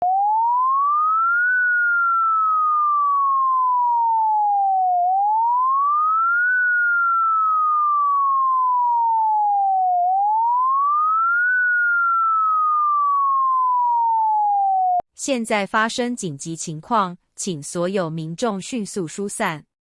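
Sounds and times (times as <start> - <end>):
rising and falling alarm tone: 0.0 - 15.0.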